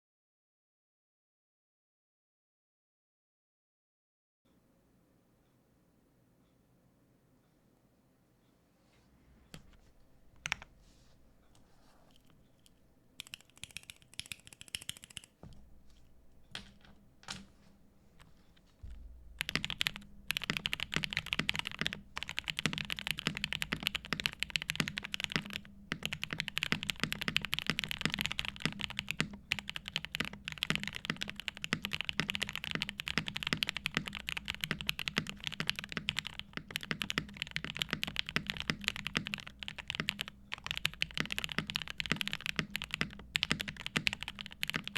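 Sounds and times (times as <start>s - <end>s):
mechanical keyboard typing: 10.4s - 10.7s, 12.1s - 15.4s, 19.4s - 44.9s.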